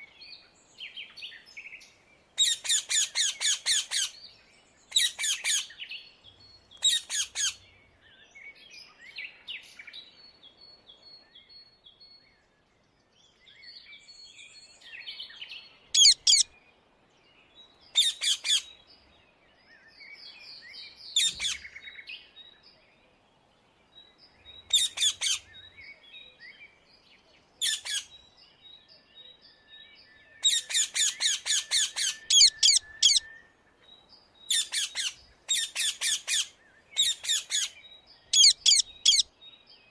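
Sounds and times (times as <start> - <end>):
high bird chirps and twitters: 16.0 - 16.5, 30.5 - 33.3, 34.5 - 39.3
parakeets screeching: 16.0 - 16.5, 31.0 - 33.2, 38.4 - 39.3.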